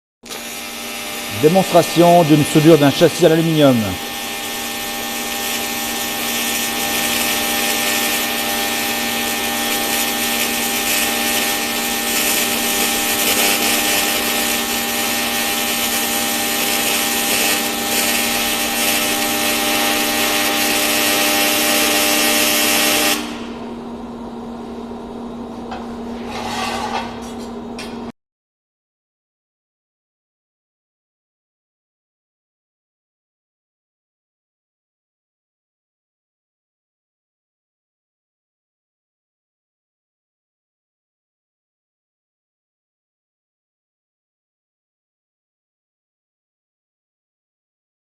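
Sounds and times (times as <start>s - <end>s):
welding arc hissing and buzzing: 0.3s - 23.8s.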